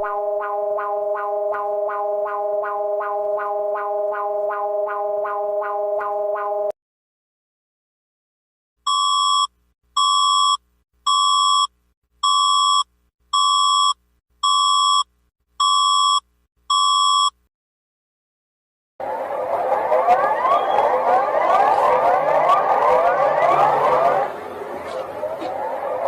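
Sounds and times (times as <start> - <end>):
siren-like wail: 0.0 - 6.7, 19.0 - 26.0.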